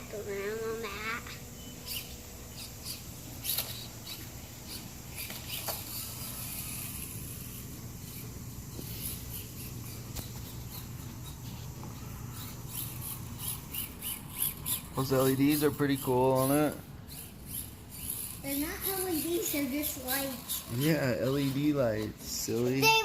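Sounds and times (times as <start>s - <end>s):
electric motor humming: 0.0s - 23.0s.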